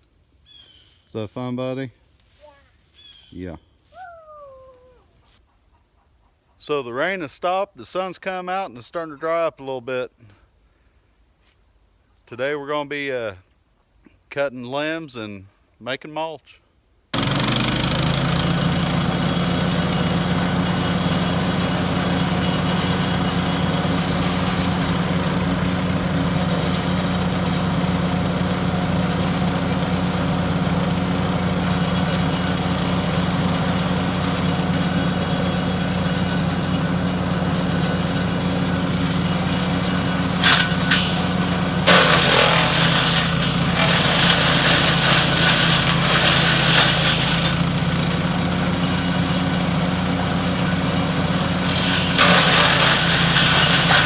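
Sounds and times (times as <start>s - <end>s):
wood chipper engine running: 17.2s - 54.0s.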